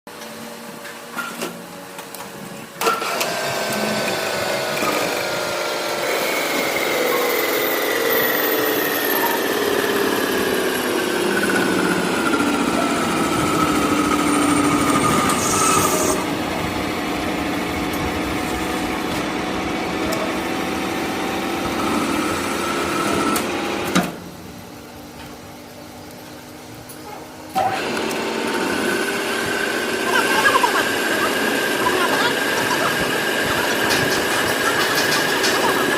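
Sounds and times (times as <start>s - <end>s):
machine running hum: 1.6s - 35.9s
machine tool cutting whine: 2.8s - 24.0s.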